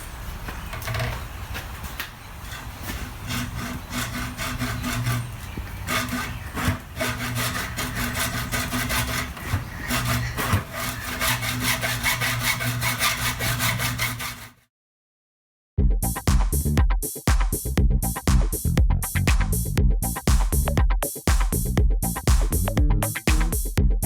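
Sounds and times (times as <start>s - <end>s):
hand saw sawing through tube: 2.5s - 14.6s.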